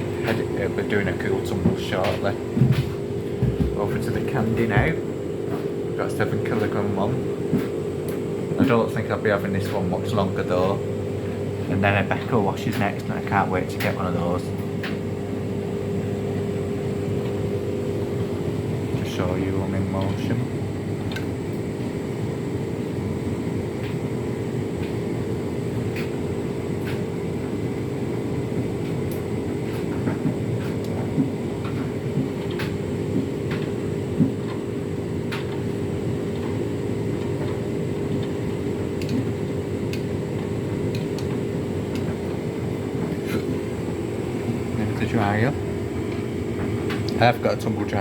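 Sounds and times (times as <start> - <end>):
appliance motor hum: 0.0 - 48.0
knocks and clicks from the load: 1.4 - 5.7
dryer ball tumbling in drum: 1.5 - 5.0.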